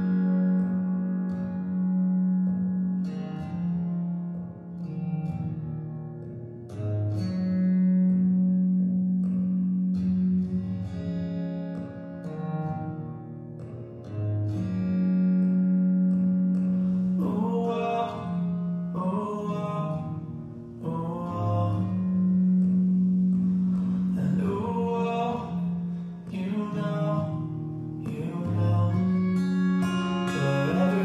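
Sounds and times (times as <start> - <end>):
plucked guitar: 0.0 - 31.0
bass line: 14.2 - 31.0.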